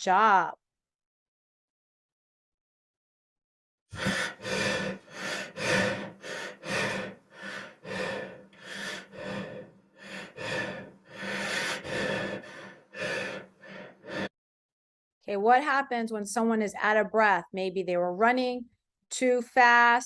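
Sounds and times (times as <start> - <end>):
person panting hard: 4.0 - 14.3.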